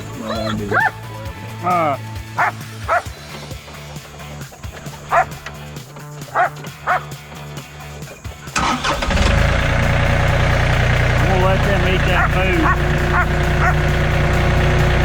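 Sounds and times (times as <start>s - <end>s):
tractor engine running: 0.0s - 15.0s
dog yipping: 0.3s - 1.0s, 2.4s - 3.2s, 4.9s - 5.4s, 6.3s - 7.1s, 12.2s - 13.8s.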